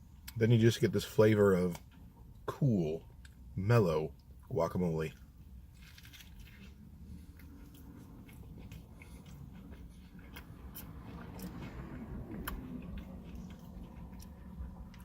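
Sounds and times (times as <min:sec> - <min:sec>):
low room hum: 0:00.0 - 0:15.0
chewing with small crunches: 0:05.1 - 0:15.0.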